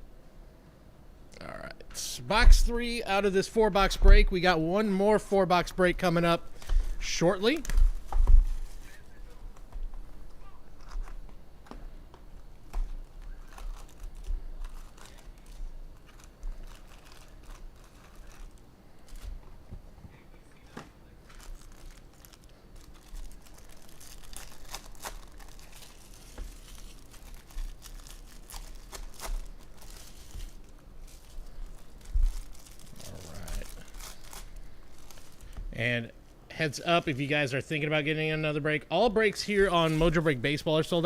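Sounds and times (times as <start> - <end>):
plastic wrapping crinkling and tearing: 12.6 - 19.4, 20.6 - 35.8.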